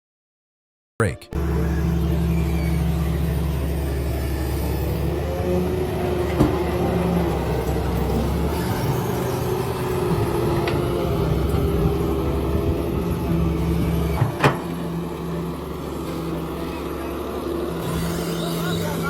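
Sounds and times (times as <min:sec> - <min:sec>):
heavy engine rumbling: 0:01.4 - 0:19.0.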